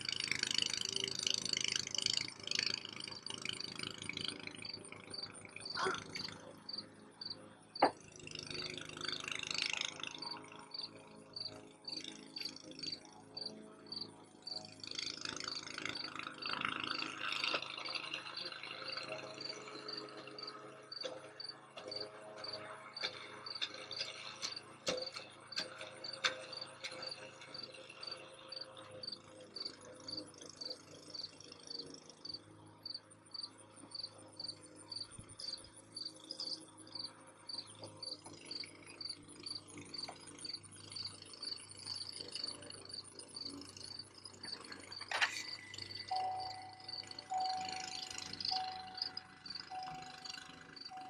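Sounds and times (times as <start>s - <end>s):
insects chirping: 0.0s - 51.0s
faint high trill: 44.9s - 51.0s.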